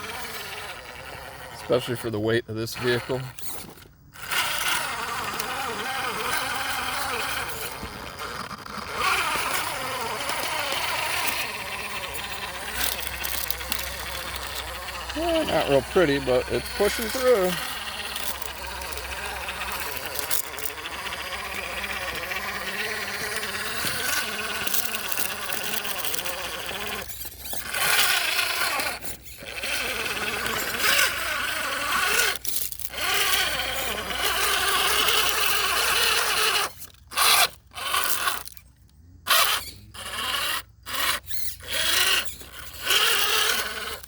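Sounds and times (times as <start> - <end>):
rc car motor whining: 0.0 - 44.0.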